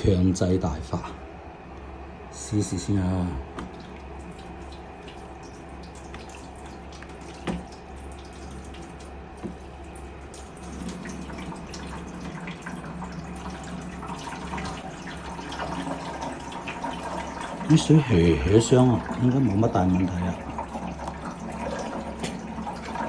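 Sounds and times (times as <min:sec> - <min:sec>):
steady low hum: 0:00.0 - 0:23.0
small knocks: 0:03.5 - 0:05.2, 0:05.9 - 0:07.8
water trickling and hissing: 0:03.6 - 0:18.7.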